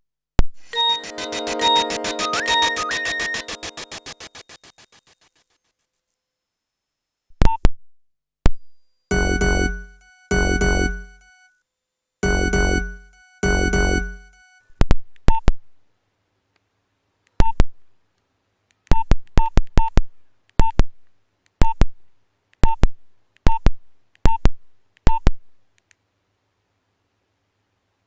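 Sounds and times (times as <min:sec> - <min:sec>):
phone keypad beeps: 0:00.7 - 0:04.2
ringtone note: 0:00.7 - 0:04.9, 0:09.1 - 0:11.5, 0:12.2 - 0:14.7.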